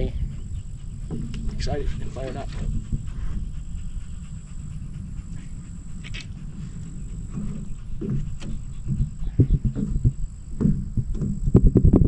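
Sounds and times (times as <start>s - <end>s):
faint high whine: 0.0s - 12.0s
irregular low thumps: 0.0s - 12.0s
wind rumbling on microphone: 0.0s - 12.0s.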